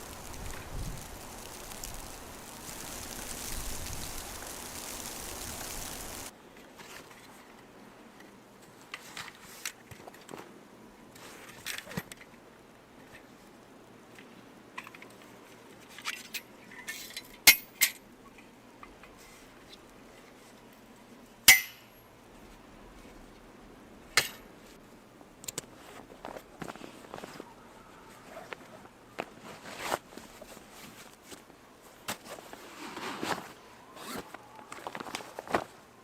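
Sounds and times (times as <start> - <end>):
storm wind: 0.0 - 6.3.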